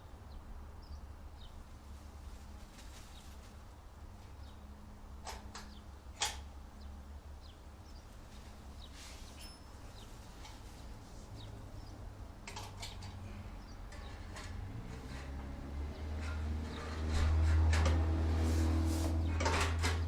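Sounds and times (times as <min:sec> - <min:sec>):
metallic clicks and knocks: 0:12.4 - 0:13.2.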